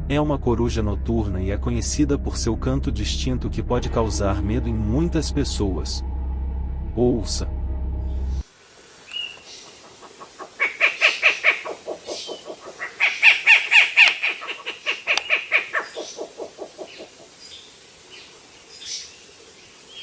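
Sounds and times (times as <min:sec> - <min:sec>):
faint thin calls: 0:09.0 - 0:17.3
owl rasping call: 0:09.1 - 0:17.3.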